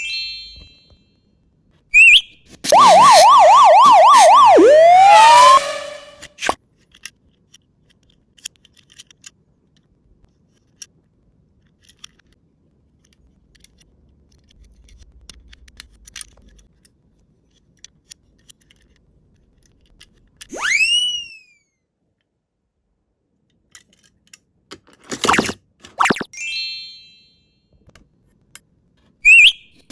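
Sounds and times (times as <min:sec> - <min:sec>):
cartoon pitch sweep effect: 0:02.0 - 0:06.5, 0:20.5 - 0:21.5, 0:26.0 - 0:27.2, 0:29.3 - 0:29.7
toy car clicks and taps: 0:06.8 - 0:09.9, 0:11.6 - 0:12.4, 0:13.0 - 0:20.5, 0:23.5 - 0:25.4.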